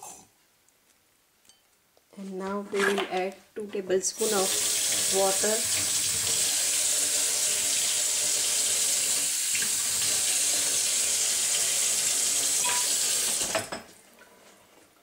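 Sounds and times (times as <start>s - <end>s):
tap running into sink: 12.6s - 13.8s.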